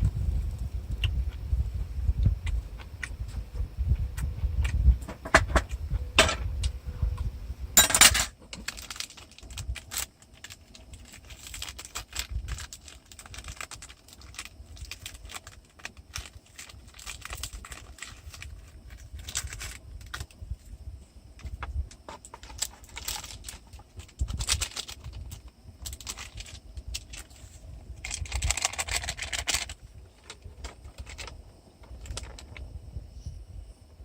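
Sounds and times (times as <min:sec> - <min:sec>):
small metal items jangling: 0:07.8 - 0:10.0.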